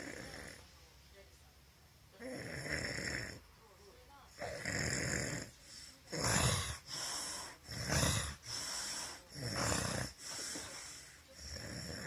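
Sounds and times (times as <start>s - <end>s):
heavy rasping snoring: 0.0s - 0.6s, 2.2s - 3.5s, 4.4s - 12.0s
soft breathing: 5.5s - 6.1s, 6.7s - 11.4s.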